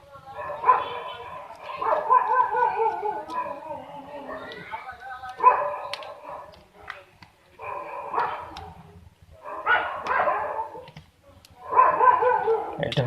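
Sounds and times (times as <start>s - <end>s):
dog barking: 0.4s - 4.6s, 5.4s - 7.0s, 7.6s - 8.8s, 9.4s - 10.9s, 11.6s - 12.9s.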